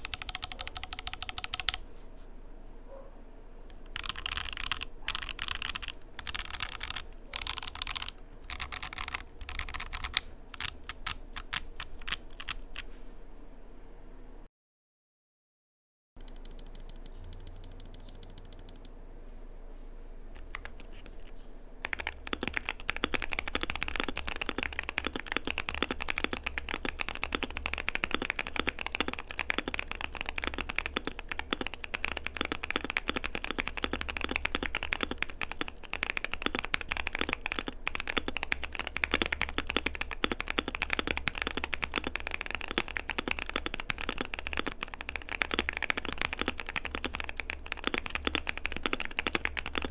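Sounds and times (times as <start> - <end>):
fast typing on mechanical keyboard: 0.0 - 1.8, 3.8 - 12.9, 16.2 - 18.9, 21.8 - 49.9
faint low hum: 0.0 - 14.5.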